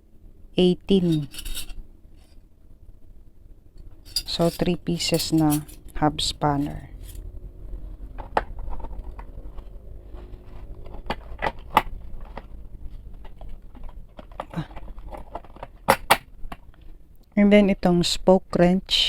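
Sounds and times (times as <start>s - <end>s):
faint low hum: 0.0s - 19.0s
metal tools clinking: 1.0s - 2.3s, 4.0s - 7.2s.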